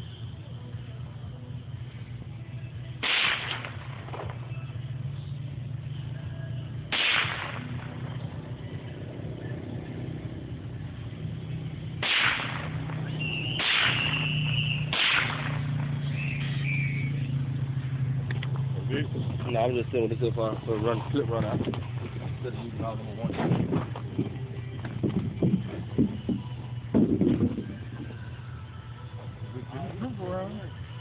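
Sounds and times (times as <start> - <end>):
steady low hum: 0.0 - 31.0
rifle shots: 3.0 - 4.5, 6.9 - 8.2, 12.0 - 16.2.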